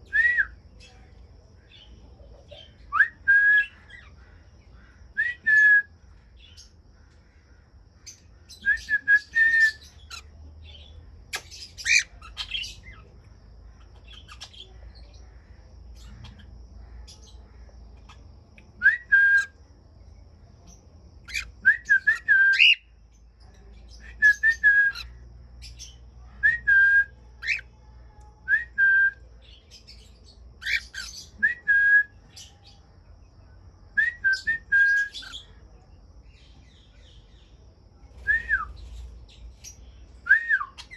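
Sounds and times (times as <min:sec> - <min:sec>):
cockatiels whistling calls: 0:21.3 - 0:22.8, 0:27.4 - 0:27.6, 0:30.6 - 0:31.6
cockatiels squawking: 0:30.6 - 0:31.1.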